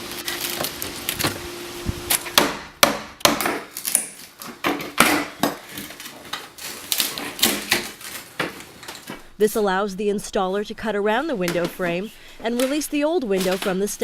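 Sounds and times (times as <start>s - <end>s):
wood cracking: 3.3s - 9.2s.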